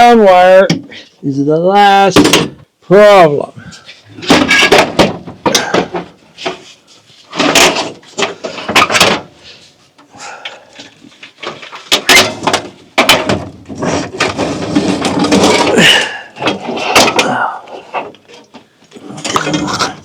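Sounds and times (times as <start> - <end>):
panel scraping: 11.3 - 18.5.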